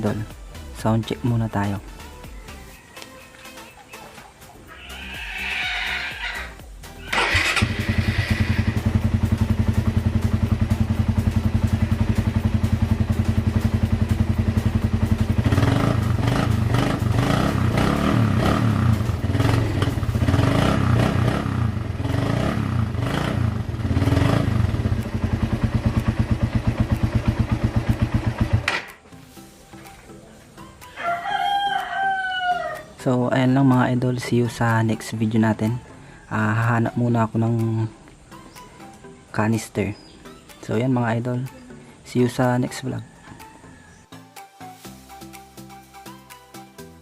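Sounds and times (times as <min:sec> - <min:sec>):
motorcycle engine idling and revving: 0:06.6 - 0:29.0.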